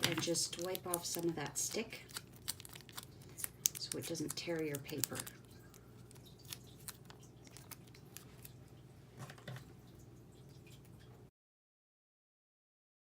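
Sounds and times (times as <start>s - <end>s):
paper and tape rustling: 0.0s - 8.6s.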